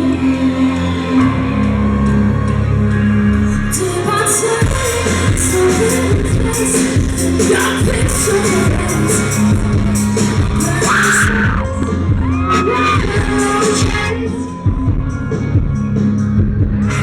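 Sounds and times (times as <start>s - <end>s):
live rock band playing: 1.2s - 17.0s
person singing: 3.4s - 15.0s.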